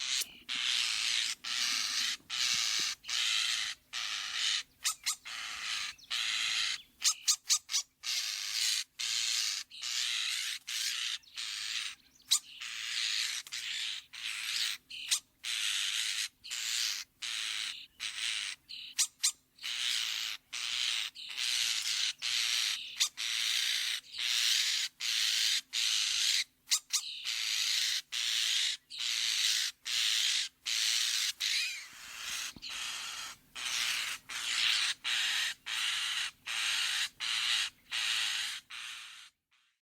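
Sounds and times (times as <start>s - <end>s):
starling harsh raspy calls: 0.0s - 39.8s.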